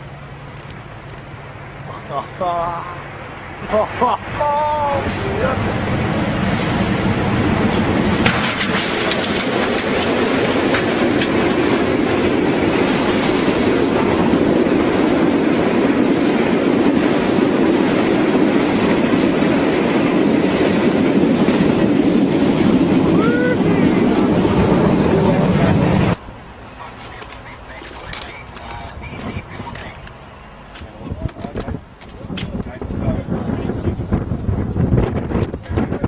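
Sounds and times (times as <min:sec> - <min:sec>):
train rumbling on rails: 0:02.7 - 0:36.0
sharp clicks: 0:27.0 - 0:32.6.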